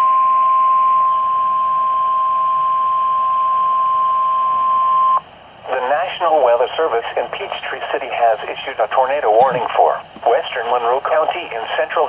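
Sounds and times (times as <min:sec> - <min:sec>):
radio hiss: 0:05.6 - 0:12.0.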